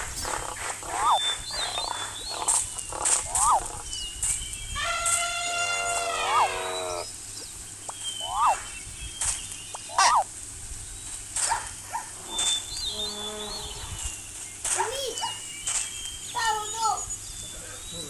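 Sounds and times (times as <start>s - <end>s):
animal calls: 0.0s - 4.0s, 4.8s - 7.1s, 7.9s - 8.8s, 9.7s - 10.3s, 11.4s - 14.0s
sharp clicks: 0.0s - 6.1s, 14.6s - 16.2s.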